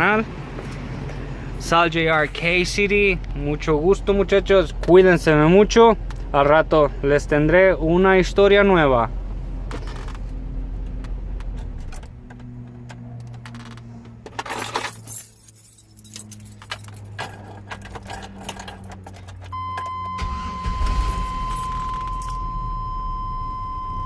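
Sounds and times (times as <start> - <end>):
car engine running: 0.0 - 23.8
keys jangling: 13.2 - 19.9
high electronic beep tone: 19.5 - 24.0.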